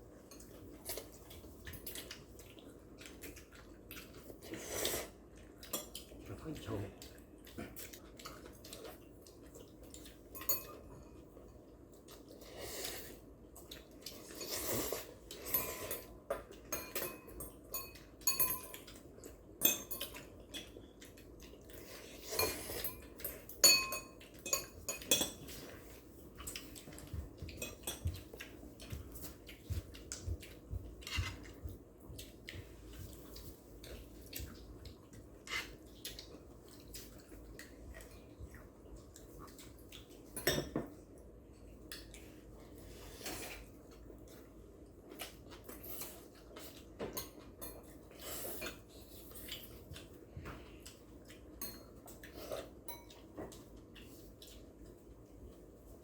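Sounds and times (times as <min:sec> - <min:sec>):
cutlery clinking on dishes: 0:10.3 - 0:11.6, 0:14.1 - 0:20.8, 0:22.0 - 0:29.4, 0:40.3 - 0:41.0, 0:51.6 - 0:53.6.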